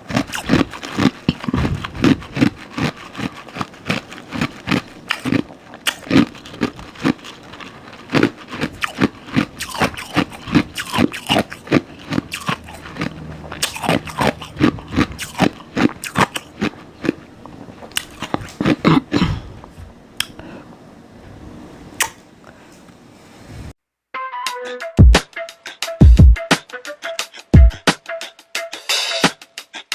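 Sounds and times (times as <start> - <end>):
mouth crunching and chewing: 0.0 - 20.4.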